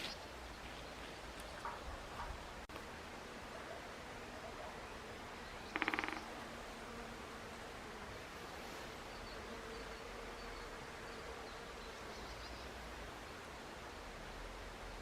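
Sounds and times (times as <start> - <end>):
soft outdoor hiss: 0.0 - 15.0
flying insect buzzing: 5.7 - 11.7.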